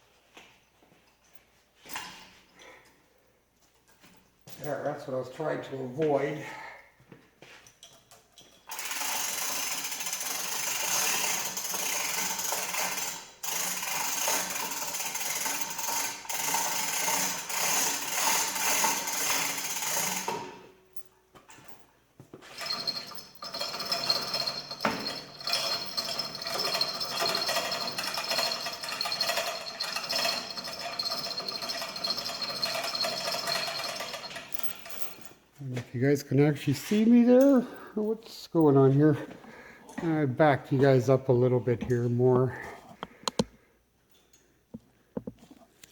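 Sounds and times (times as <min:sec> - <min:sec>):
electric hoist running: 0:22.6 - 0:35.0.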